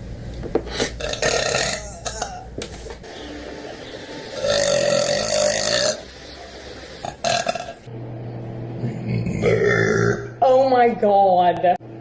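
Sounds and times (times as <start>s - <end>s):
woman burping: 1.0s - 2.5s, 4.4s - 6.0s, 7.2s - 7.8s, 9.0s - 10.4s.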